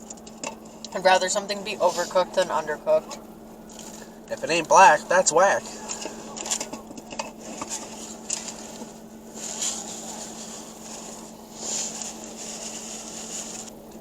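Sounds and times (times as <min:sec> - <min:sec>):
steady low hum: 0:00.0 - 0:14.0
food packaging rustling: 0:05.8 - 0:14.0.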